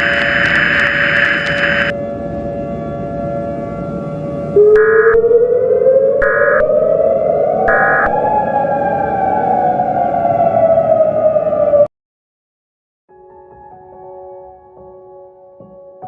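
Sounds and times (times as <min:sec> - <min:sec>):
hiss: 0:00.0 - 0:01.9
steady hum: 0:00.0 - 0:01.9.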